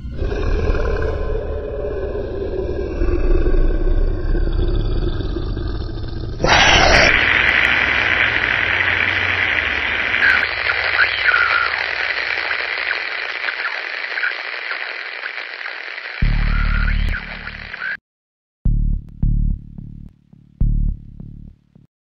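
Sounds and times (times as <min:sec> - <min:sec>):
low rumble: 0:00.0 - 0:13.0
electronic static hiss: 0:06.4 - 0:18.0.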